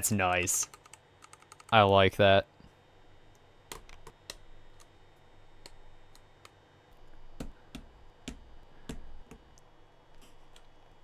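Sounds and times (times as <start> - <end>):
keycaps clicking on keyboard switches: 0.6 - 1.8.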